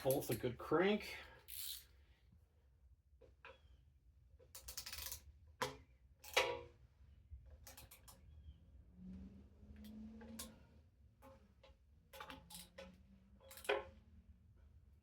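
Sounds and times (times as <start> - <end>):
hand tool scraping and clicking: 1.4 - 1.9.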